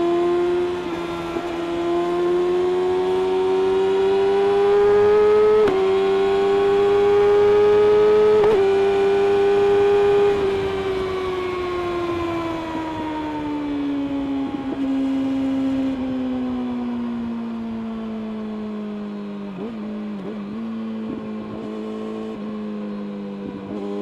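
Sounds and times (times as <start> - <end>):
motorcycle engine revving high: 0.0 - 16.1.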